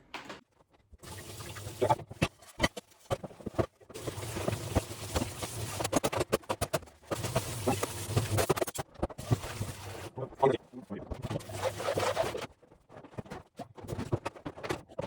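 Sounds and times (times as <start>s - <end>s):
clicks and knocks of handled items: 12.4s - 15.0s.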